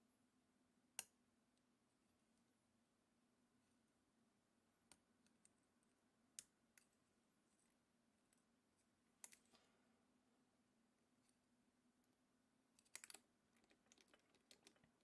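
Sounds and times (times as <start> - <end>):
faint metal clicks of lock pick: 9.2 - 9.6, 12.8 - 14.9.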